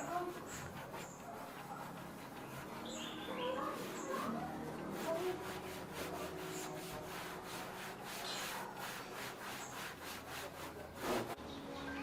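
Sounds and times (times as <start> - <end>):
hand rubbing on hard surface: 0.0 - 11.4.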